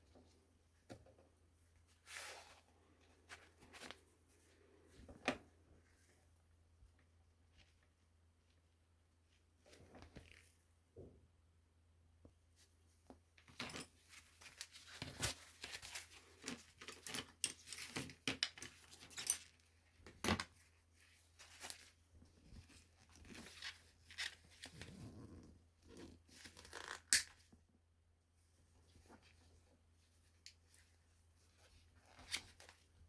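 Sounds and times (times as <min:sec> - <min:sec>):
rustling and scraping handling noise: 0:01.8 - 0:06.2, 0:12.6 - 0:27.5, 0:28.7 - 0:33.0.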